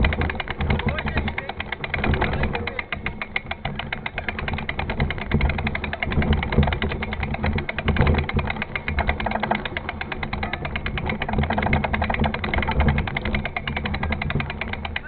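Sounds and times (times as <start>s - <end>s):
bike tyres rumbling on dirt: 0.0s - 15.0s
rapid even ticking: 0.0s - 15.0s
wind: 0.0s - 15.0s.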